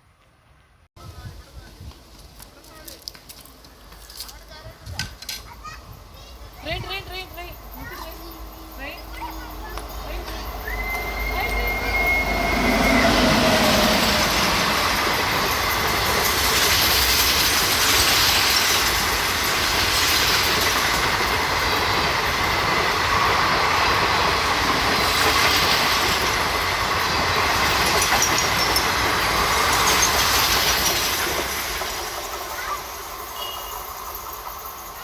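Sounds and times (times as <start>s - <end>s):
train wheels on rails: 0.2s - 35.0s
high wheel squeals: 7.7s - 16.5s, 32.5s - 35.0s.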